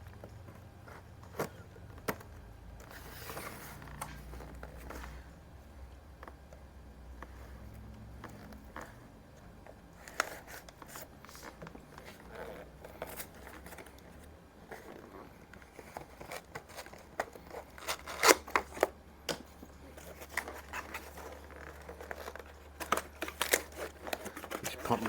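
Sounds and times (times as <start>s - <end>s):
steady low hum: 0.0s - 25.0s
packaging rustling: 10.0s - 19.0s, 19.8s - 25.0s.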